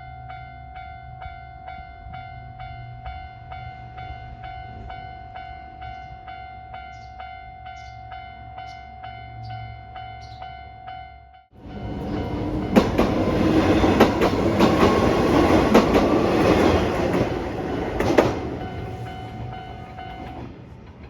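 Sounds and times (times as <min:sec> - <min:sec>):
level crossing bell clanging: 0:00.8 - 0:20.5
electric train rumble: 0:11.6 - 0:21.0.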